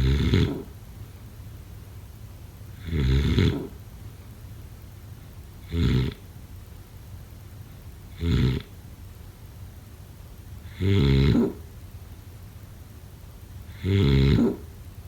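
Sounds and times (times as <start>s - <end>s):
snoring: 0.0s - 0.7s, 2.8s - 3.8s, 5.7s - 6.2s, 8.2s - 8.7s, 10.7s - 11.6s, 13.7s - 14.7s
faint low hum: 0.0s - 15.0s.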